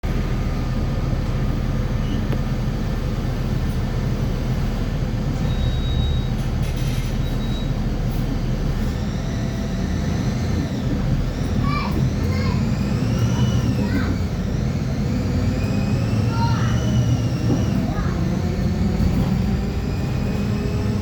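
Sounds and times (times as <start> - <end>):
bus diesel drivetrain noise: 0.0 - 21.0
brief high squeak: 5.4 - 7.8.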